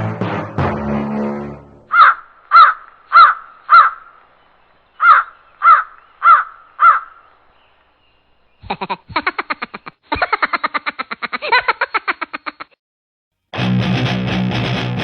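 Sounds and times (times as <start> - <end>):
crow cawing: 1.9 - 4.3, 5.0 - 7.4.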